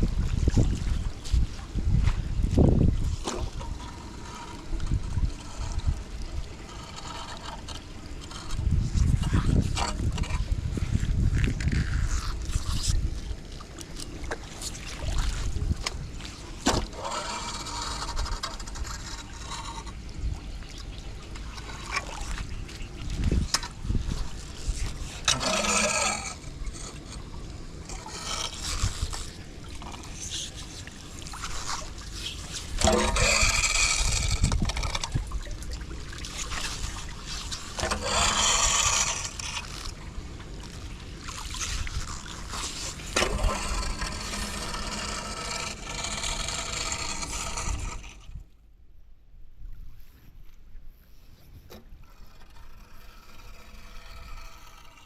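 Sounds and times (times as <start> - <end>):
water trickling: 0.0 - 48.4
steady low rumble: 0.0 - 48.9
debris scraping off drain: 42.4 - 48.2.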